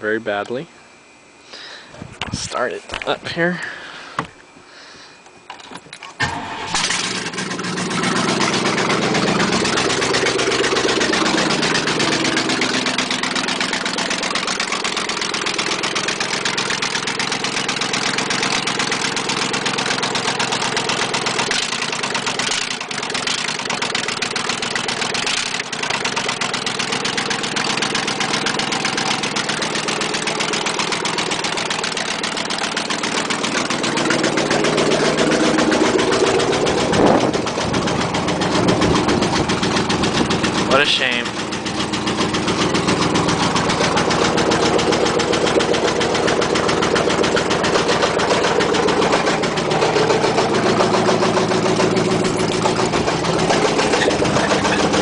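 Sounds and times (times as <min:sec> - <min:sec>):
engine starting: 0:06.0 - 0:10.3, 0:21.3 - 0:27.3, 0:52.4 - 0:55.0
engine idling with rod knock: 0:06.8 - 0:55.0.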